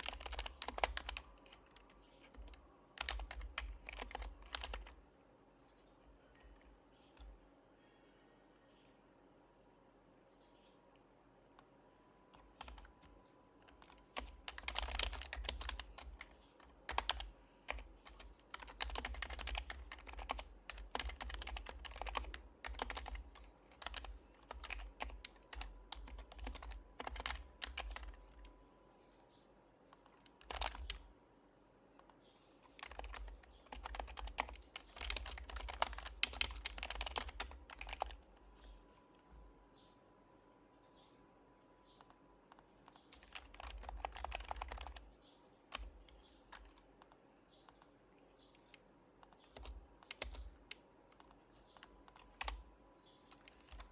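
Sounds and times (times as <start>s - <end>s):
muted keyboard typing: 0.0s - 5.0s, 12.3s - 28.6s, 30.0s - 31.1s, 32.8s - 38.8s, 41.9s - 53.9s.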